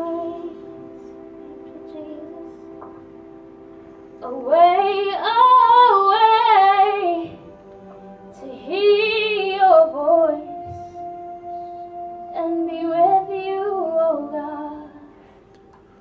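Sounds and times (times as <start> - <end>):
woman singing: 0.0 - 2.8, 4.2 - 7.5, 8.3 - 11.0, 12.3 - 15.1
sustained accompaniment chords: 0.0 - 16.0.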